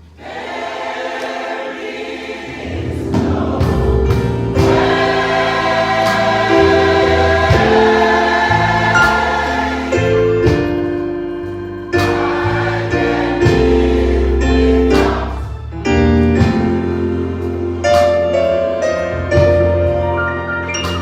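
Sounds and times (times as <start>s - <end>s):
gospel choir singing: 0.0s - 20.2s
sustained accompaniment chords: 0.0s - 21.0s.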